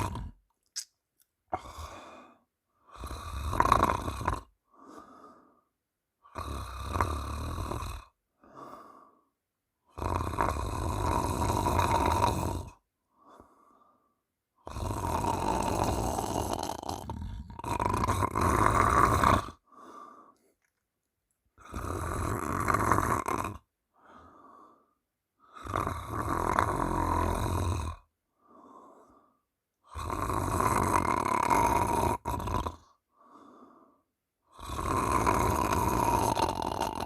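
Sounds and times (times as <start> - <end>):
woman snoring: 0.0 - 0.4, 1.5 - 5.2, 6.2 - 8.8, 9.9 - 13.5, 14.6 - 20.1, 21.6 - 29.2, 29.8 - 33.7, 34.5 - 37.0
faint out-breath: 1.5 - 3.1, 4.6 - 5.8, 8.3 - 9.4, 13.0 - 14.3, 19.5 - 20.8, 23.9 - 25.7, 28.3 - 29.5, 32.8 - 34.2.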